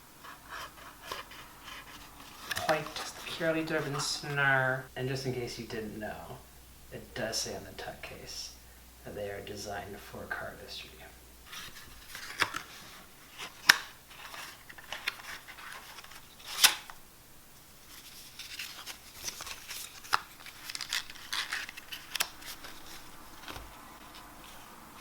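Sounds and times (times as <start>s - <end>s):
playing cards sliding and scraping: 0.2s - 4.4s.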